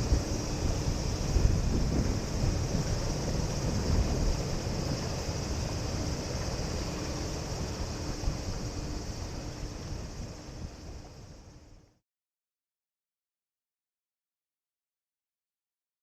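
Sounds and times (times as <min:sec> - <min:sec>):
wind buffeting microphone: 0:00.0 - 0:11.6
distant jet engine rumble: 0:00.0 - 0:11.8.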